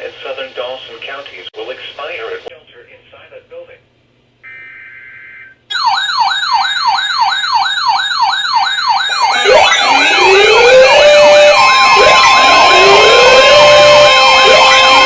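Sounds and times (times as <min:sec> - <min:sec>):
fast sweeping siren: 0:04.5 - 0:15.0
slower siren sweeps: 0:05.7 - 0:15.0
electronic data tones: 0:08.9 - 0:15.0.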